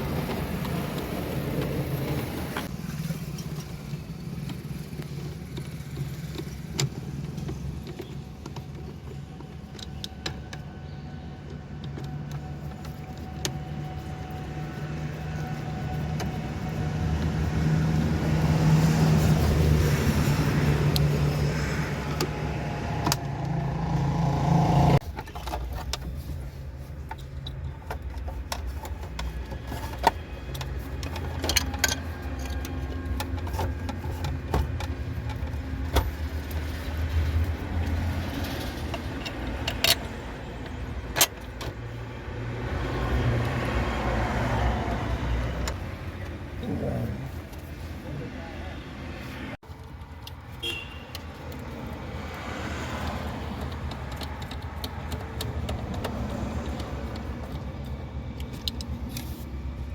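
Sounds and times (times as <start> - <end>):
vehicle engine humming: 0.0 - 59.9
sharp clicks and knocks: 25.0 - 41.9, 49.6 - 59.9.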